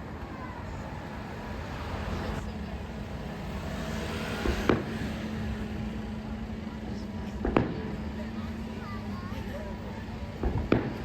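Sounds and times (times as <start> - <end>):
low outdoor rumble: 0.0 - 11.0
firework bang: 4.4 - 5.3, 7.4 - 8.0, 10.4 - 11.0.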